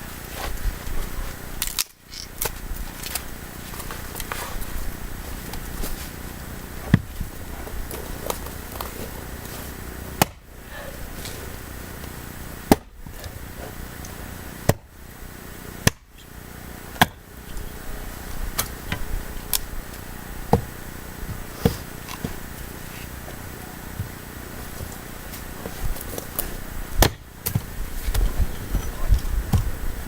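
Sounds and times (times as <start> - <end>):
axe chopping wood: 10.2 - 10.5, 12.0 - 13.2, 14.7 - 14.9, 15.8 - 16.1, 17.0 - 17.2, 26.0 - 27.8.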